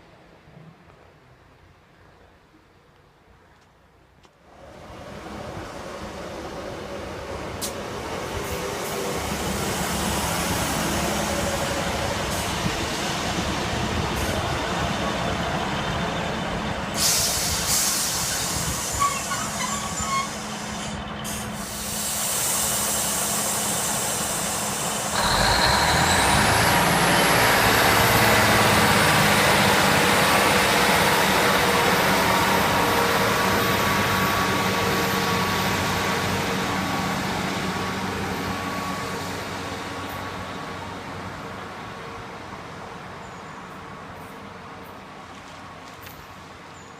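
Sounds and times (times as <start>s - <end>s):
train rushing past: 4.5s - 44.8s
hiss burst: 16.9s - 26.5s.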